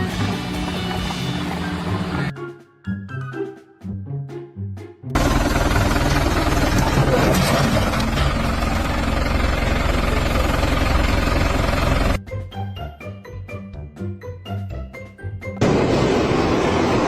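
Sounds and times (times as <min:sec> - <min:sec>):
background music: 0:00.0 - 0:05.2, 0:12.2 - 0:15.7
loud machinery pulsing: 0:05.2 - 0:12.2.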